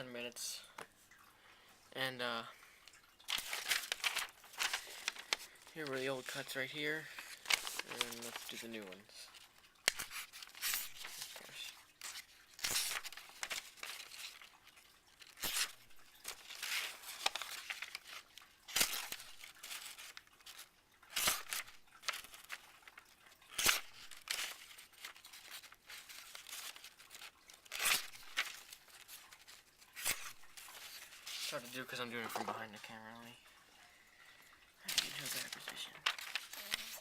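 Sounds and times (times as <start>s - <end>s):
paper rustling: 2.9s - 32.9s, 34.8s - 37.0s
knife slicing paper: 9.8s - 14.5s, 15.2s - 20.2s, 21.1s - 22.6s, 23.5s - 31.6s.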